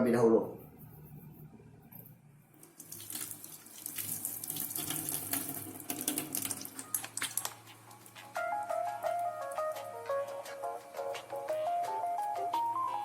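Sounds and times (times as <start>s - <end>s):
water running from a tap: 2.6s - 7.7s
hands washing under water: 2.6s - 8.2s
music melody: 6.9s - 13.0s.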